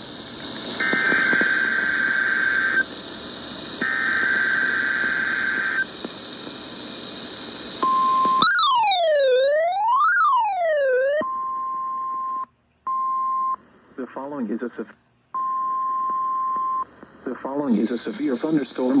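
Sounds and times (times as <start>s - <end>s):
buzzing modem data bursts: 0.6s - 11.2s
steady warning alarm tone: 7.8s - 11.3s
sweeping siren-like alarm tone: 8.4s - 11.2s.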